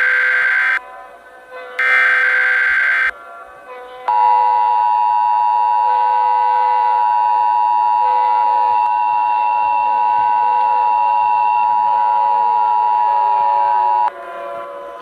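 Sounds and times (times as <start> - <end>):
two-tone electronic alert tone: 1.8 - 3.1.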